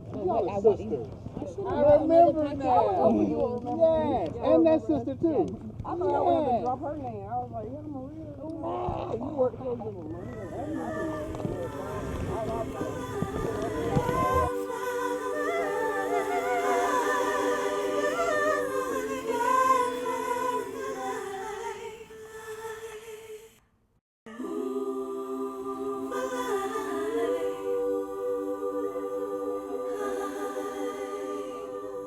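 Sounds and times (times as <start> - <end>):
wordless a cappella singing: 10.0 - 23.6, 24.3 - 32.0.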